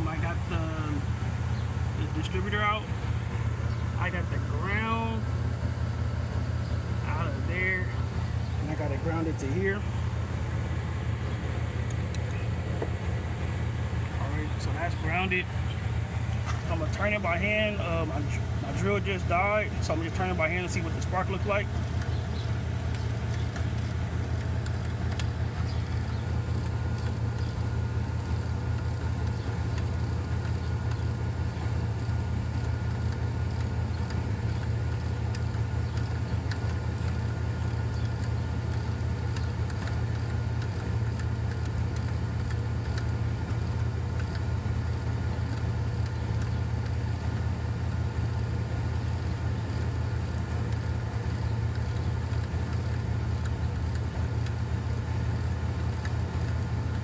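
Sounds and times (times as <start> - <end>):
steady low hum: 0.0 - 57.0
faint clicks: 19.8 - 57.0.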